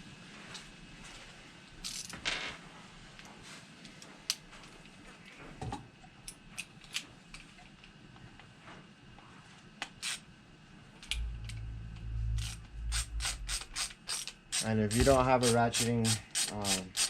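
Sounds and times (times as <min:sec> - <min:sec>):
low handling rumble: 0:10.8 - 0:15.4.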